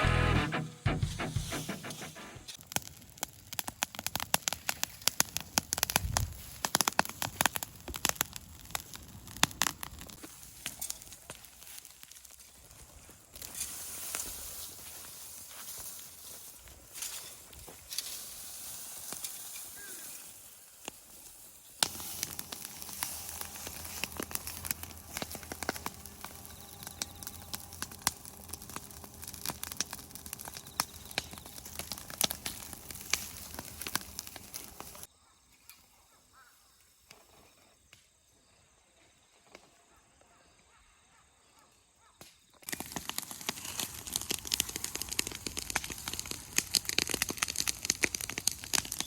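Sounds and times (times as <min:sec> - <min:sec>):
fire crackling and popping: 0:00.1 - 0:35.1, 0:42.2 - 0:49.0.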